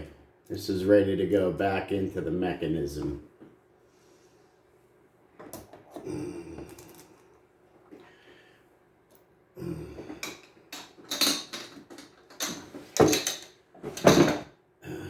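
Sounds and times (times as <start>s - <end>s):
knocks and rattles of small parts: 10.0s - 14.5s.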